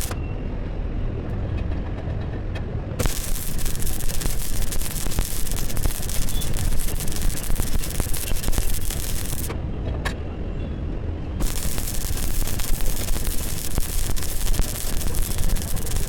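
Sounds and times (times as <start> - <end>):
welding arc crackling and hissing: 3.0 - 9.6, 11.4 - 16.0.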